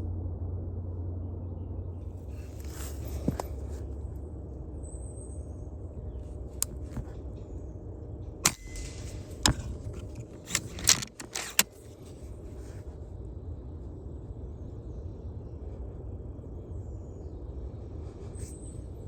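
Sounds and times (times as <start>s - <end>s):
steady low rumble: 0.0s - 19.0s
sharp clicks and knocks: 2.4s - 3.8s, 6.6s - 7.2s, 8.4s - 12.0s.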